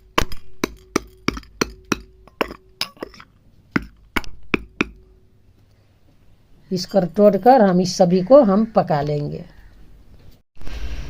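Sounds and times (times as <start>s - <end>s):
peppercorns being pounded: 0.0s - 5.2s.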